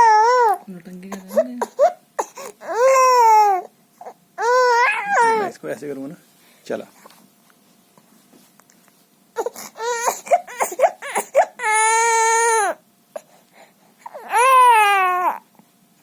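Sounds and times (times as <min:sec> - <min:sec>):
young child crying: 0:04.4 - 0:05.5, 0:14.1 - 0:15.4.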